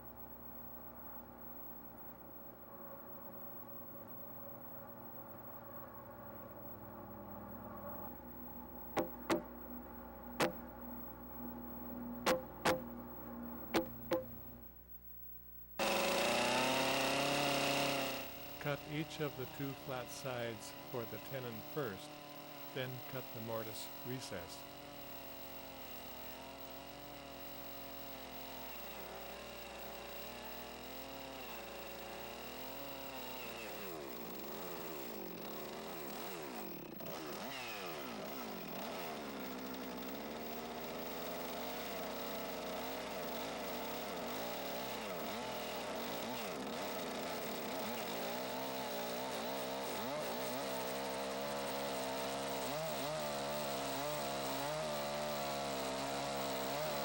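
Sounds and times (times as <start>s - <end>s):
chainsaw cutting into log: 9.0s - 9.6s, 10.4s - 10.6s, 12.2s - 13.0s, 13.7s - 14.4s, 15.8s - 57.0s.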